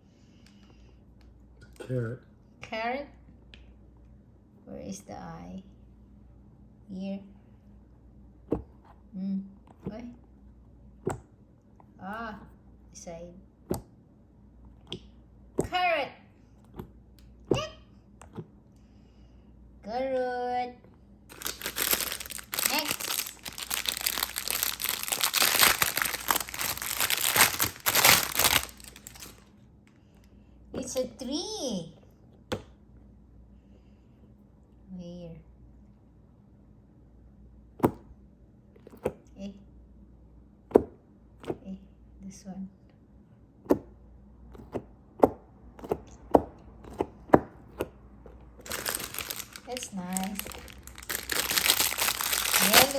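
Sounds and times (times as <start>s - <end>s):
packaging crinkling and rustling: 21.3s - 29.5s, 48.4s - 52.9s.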